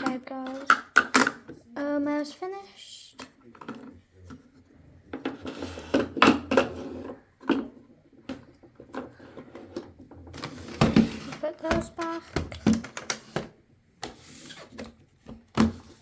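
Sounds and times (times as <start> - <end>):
makeup cases clicking and knocking: 0.0 - 1.6, 5.1 - 14.2.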